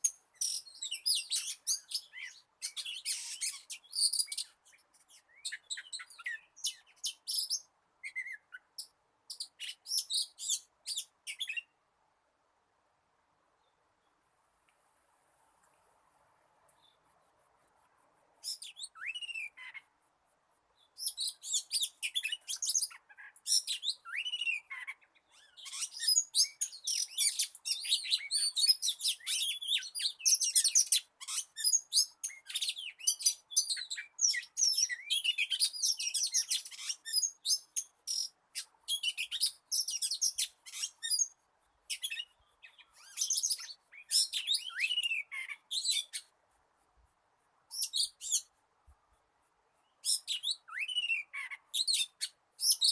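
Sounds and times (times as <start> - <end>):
bird song with chirps and whistles: 0.0 - 11.8, 18.4 - 19.9, 20.8 - 46.3, 47.7 - 48.5, 49.8 - 52.9.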